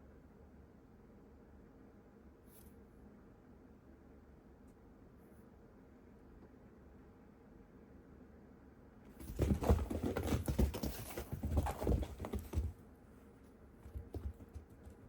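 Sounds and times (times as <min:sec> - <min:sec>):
cat paws scrabbling on floor: 0:09.1 - 0:12.9, 0:13.8 - 0:15.0.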